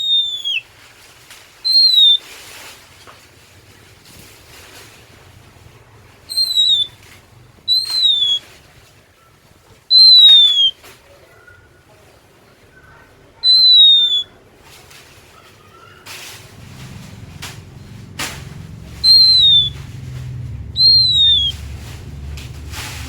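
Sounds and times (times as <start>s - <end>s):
bird whistling downward notes: 0.0s - 0.6s, 1.7s - 2.2s, 6.3s - 7.0s, 7.7s - 8.4s, 9.9s - 10.7s, 13.5s - 14.3s, 17.3s - 22.4s
soft bird notes: 16.4s - 23.0s.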